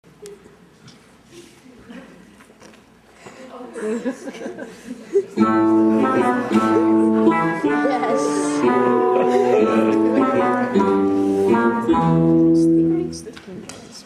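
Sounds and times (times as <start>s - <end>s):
instrumental music held notes: 5.4s - 13.3s.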